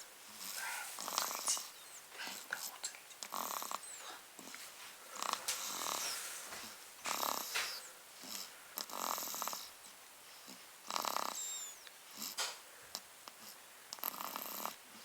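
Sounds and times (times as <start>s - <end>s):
rattling snore: 14.0s - 14.8s.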